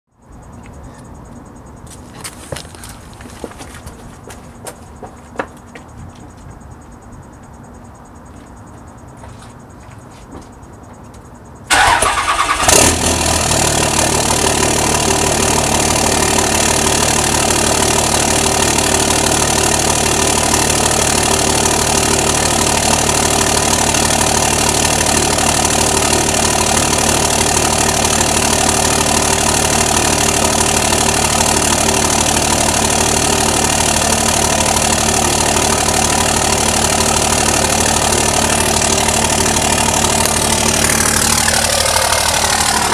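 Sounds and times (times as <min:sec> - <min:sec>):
diesel engine starting and idling: 0:11.6 - 0:42.9.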